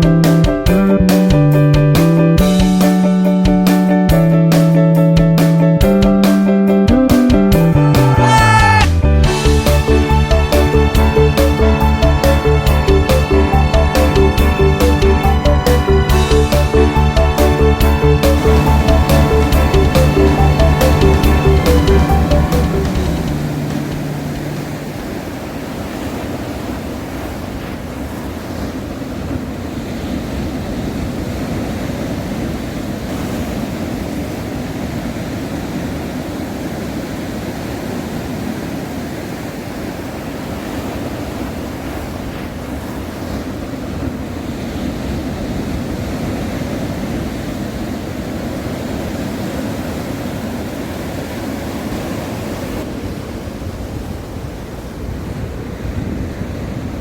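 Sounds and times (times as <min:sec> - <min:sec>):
sea waves washing: 0:00.0 - 0:57.0
wind on microphone: 0:16.1 - 0:57.0.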